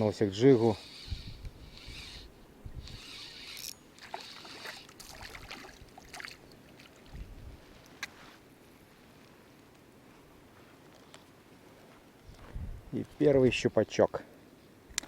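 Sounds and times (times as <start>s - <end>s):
spinning reel winding: 0.6s - 4.9s
wind buffeting microphone: 1.0s - 3.2s, 7.1s - 7.8s, 12.2s - 13.6s
water splashing: 4.0s - 7.3s.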